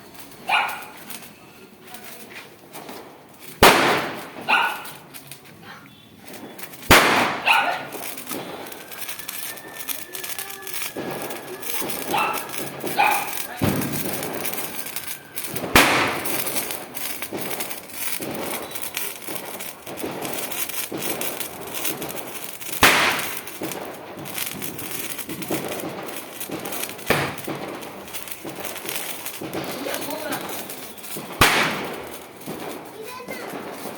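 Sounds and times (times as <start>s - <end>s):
firecracker bangs: 0.0s - 5.4s, 6.0s - 33.9s
firecrackers crackling: 0.0s - 33.9s.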